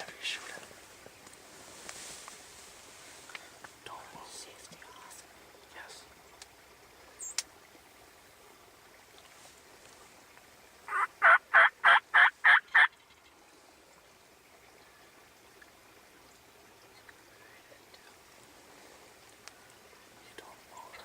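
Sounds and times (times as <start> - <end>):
turkey yelps: 10.9 - 13.1.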